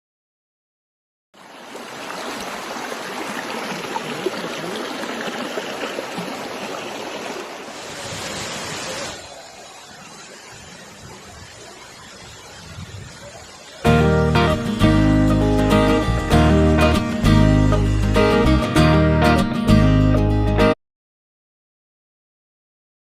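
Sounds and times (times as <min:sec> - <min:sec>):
waterfall rushing water: 0:01.4 - 0:14.5.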